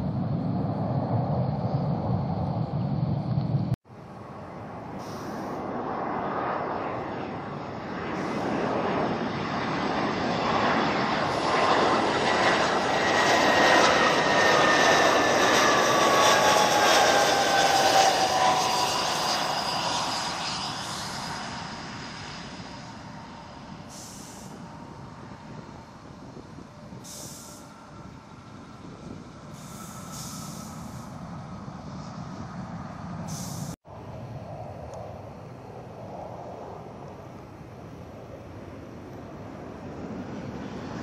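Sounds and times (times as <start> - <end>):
jet airliner flying past: 0.0 - 41.0.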